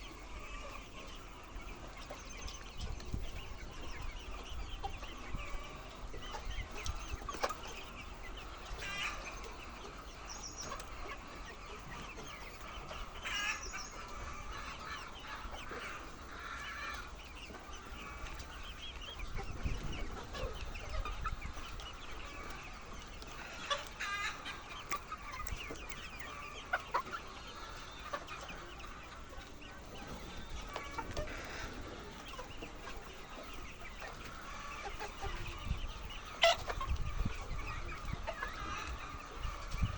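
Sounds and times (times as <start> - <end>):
hens clucking: 0.0 - 39.9
loud hen calls: 8.5 - 18.7.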